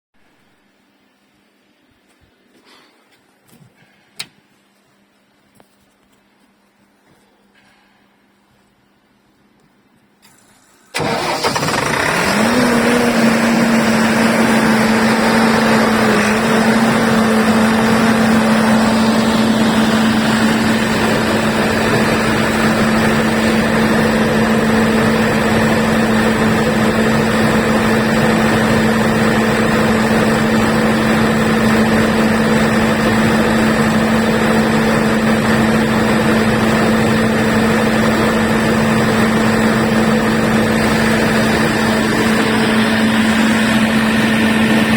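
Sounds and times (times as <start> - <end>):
diesel generator starting and running: 10.2 - 44.9.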